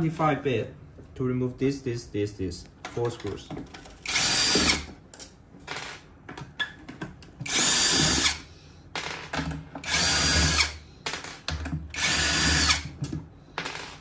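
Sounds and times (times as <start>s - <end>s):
electric drill running: 4.0s - 4.9s, 7.4s - 8.5s, 9.8s - 10.8s, 11.9s - 12.9s.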